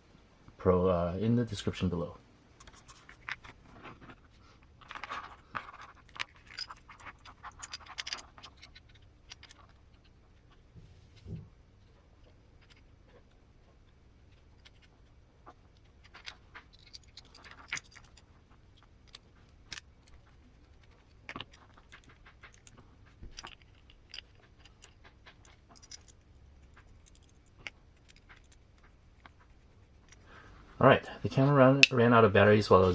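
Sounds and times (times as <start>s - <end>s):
small metal parts clicking: 4.8s - 10.6s, 14.3s - 30.4s.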